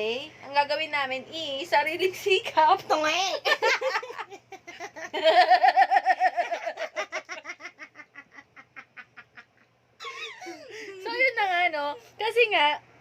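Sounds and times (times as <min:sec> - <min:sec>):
person laughing: 0:03.6 - 0:11.0.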